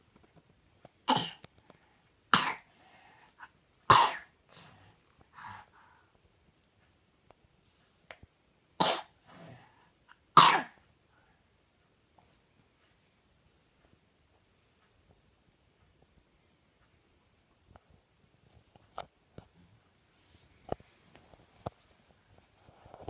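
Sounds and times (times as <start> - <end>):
child coughing: 1.1 - 1.4, 2.3 - 2.7, 3.9 - 4.3, 8.8 - 9.2, 10.4 - 10.8
faint breaths: 1.6 - 3.6, 4.5 - 6.4, 9.2 - 10.1, 11.0 - 11.6.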